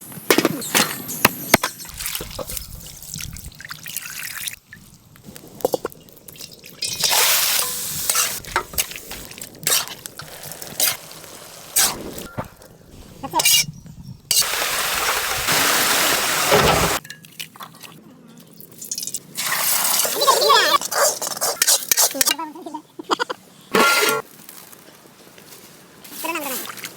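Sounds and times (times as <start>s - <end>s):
hissing water: 1.9s - 13.5s, 14.3s - 17.0s.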